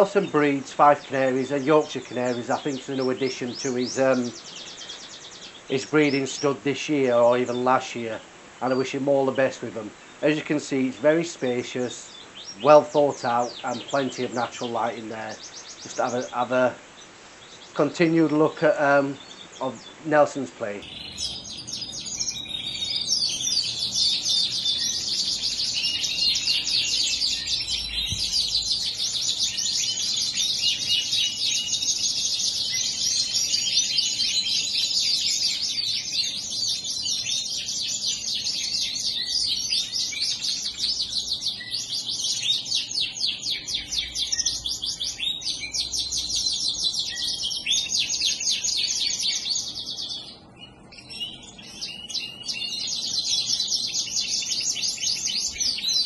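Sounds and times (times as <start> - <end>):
canaries singing and trilling: 0.0 - 56.0.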